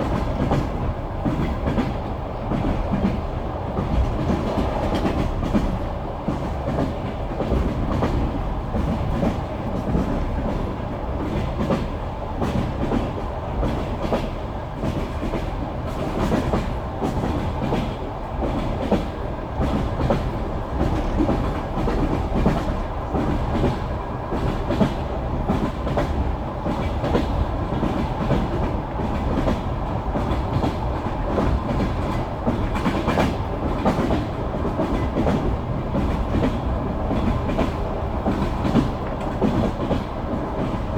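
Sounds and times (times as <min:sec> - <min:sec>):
train running rumble: 0:00.0 - 0:40.9
train wheels clacking over rail joints: 0:00.0 - 0:40.9.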